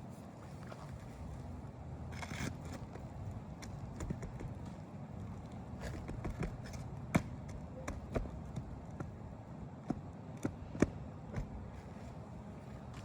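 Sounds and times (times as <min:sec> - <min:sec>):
clicks and knocks on shingle roof: 0:02.7 - 0:11.6.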